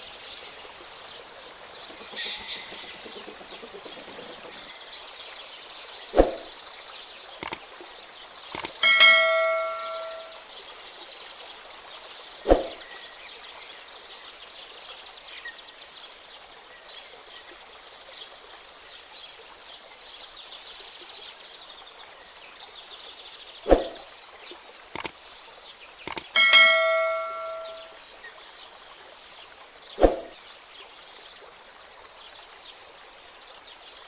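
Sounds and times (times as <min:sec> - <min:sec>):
high outdoor chirring: 0:01.1 - 0:07.8, 0:08.4 - 0:10.5, 0:12.3 - 0:13.1, 0:23.6 - 0:24.2, 0:25.0 - 0:25.2, 0:25.9 - 0:28.0, 0:29.9 - 0:30.4
clicks: 0:08.6 - 0:08.8, 0:25.0 - 0:25.2, 0:26.1 - 0:26.3
bell-like ding: 0:08.8 - 0:10.4, 0:26.4 - 0:27.9.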